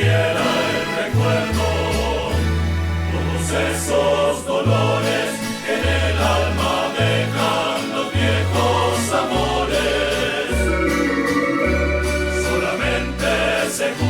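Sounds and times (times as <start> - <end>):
bass line: 1.1 - 5.1, 8.2 - 14.0
plucked strings: 6.4 - 14.0.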